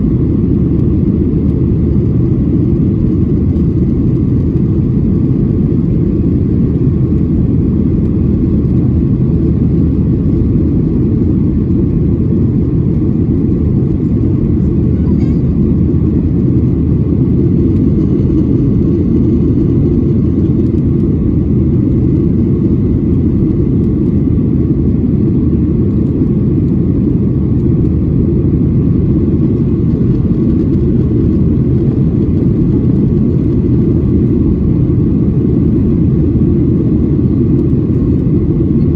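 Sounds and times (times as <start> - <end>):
airliner cabin engine rumble: 0.0 - 38.9.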